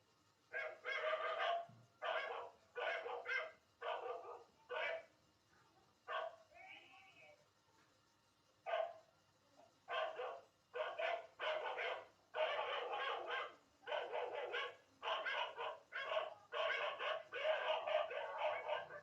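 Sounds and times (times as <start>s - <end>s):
dog barking: 0.5s - 5.2s, 6.1s - 6.5s, 8.6s - 9.1s, 9.9s - 19.0s.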